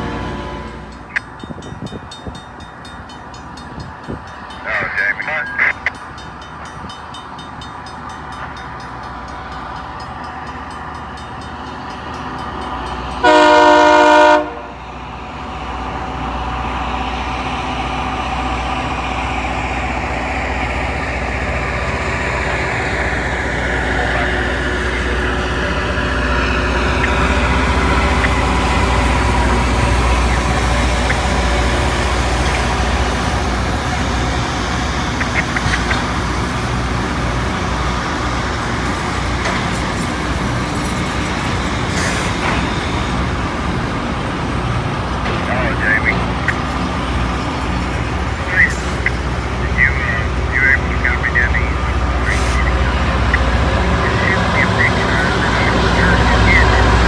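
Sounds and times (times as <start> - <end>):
rail machine engines rumbling: 0.0 - 57.0
loud horn blast: 13.2 - 14.8.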